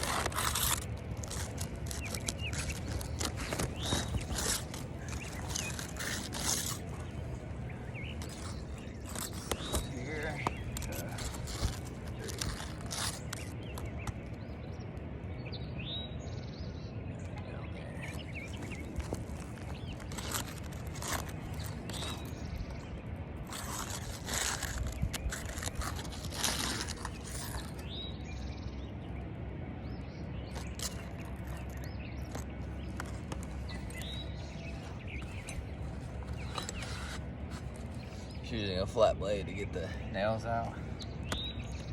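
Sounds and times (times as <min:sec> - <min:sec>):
scraper cracking roof shingles: 0:00.0 - 0:14.3, 0:18.0 - 0:28.0, 0:30.5 - 0:38.5
birds chirping: 0:00.0 - 0:41.9
steady low rumble: 0:00.0 - 0:41.9.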